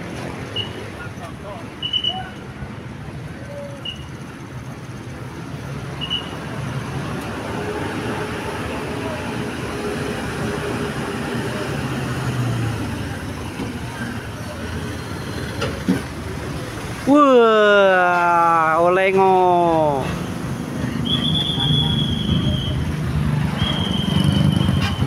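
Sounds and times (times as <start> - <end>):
vehicle passing by: 19.2 - 25.0.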